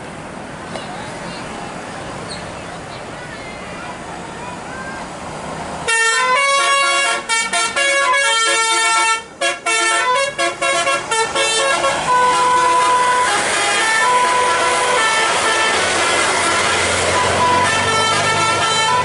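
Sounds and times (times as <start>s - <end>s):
bus multi-tone melodic horn: 5.8s - 19.0s
rushing noise: 11.0s - 19.0s.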